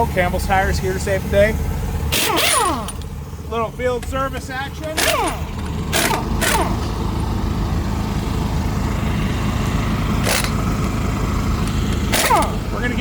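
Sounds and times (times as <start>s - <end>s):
small gasoline engine running: 1.0s - 3.2s, 4.8s - 13.0s
air tool bursts: 2.1s - 3.1s, 4.8s - 6.9s, 10.2s - 10.6s, 12.0s - 12.8s.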